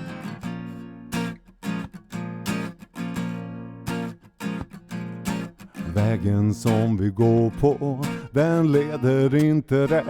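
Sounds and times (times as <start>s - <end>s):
acoustic guitar strumming: 0.0s - 10.0s
person singing: 5.8s - 10.0s.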